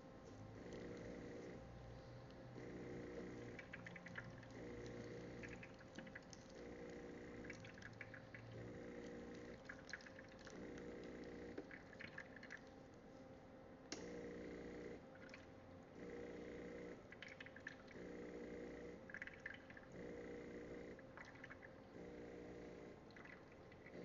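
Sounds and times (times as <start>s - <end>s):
water pump humming: 0.0s - 13.2s, 14.0s - 24.0s
water dripping and trickling: 3.6s - 6.7s, 7.4s - 12.8s, 17.1s - 18.0s, 19.1s - 19.9s, 21.1s - 21.9s, 23.1s - 24.0s.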